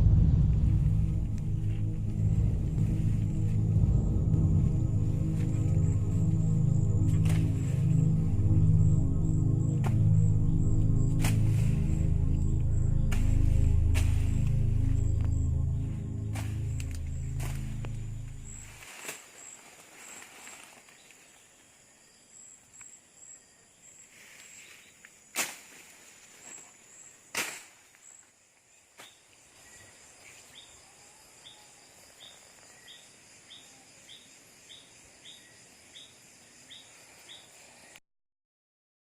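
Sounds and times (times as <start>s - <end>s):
short insect chirps: 1.9s - 25.2s
insects trilling: 25.9s - 38.0s.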